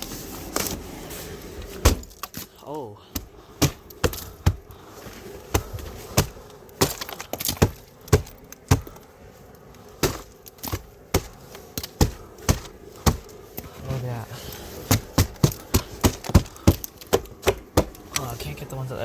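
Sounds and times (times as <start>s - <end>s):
ice cracking and breaking: 3.6s - 9.0s.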